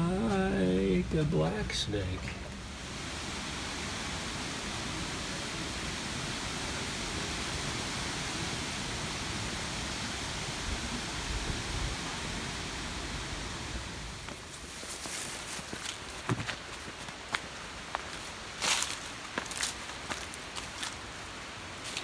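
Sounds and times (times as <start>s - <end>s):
uneven low rumble: 0.0s - 2.8s.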